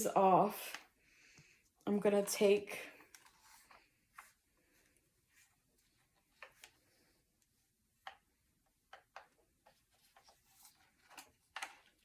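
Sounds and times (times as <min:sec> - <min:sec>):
faint clicks and taps of equipment: 0:03.0 - 0:04.4, 0:05.4 - 0:12.0.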